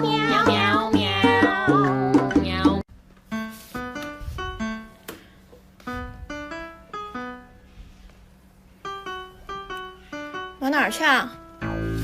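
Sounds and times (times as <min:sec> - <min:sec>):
simple keyboard melody: 0:03.2 - 0:05.2, 0:05.8 - 0:07.7, 0:08.8 - 0:12.0.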